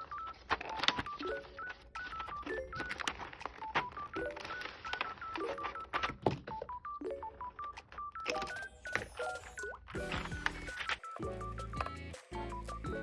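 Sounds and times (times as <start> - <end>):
bouncy synth music: 6.9 - 13.0.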